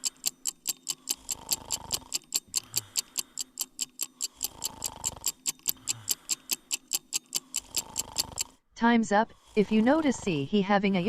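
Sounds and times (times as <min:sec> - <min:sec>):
fast clock ticking: 0:00.0 - 0:08.6
rattling snore: 0:00.8 - 0:03.2, 0:04.1 - 0:08.6, 0:09.3 - 0:11.0.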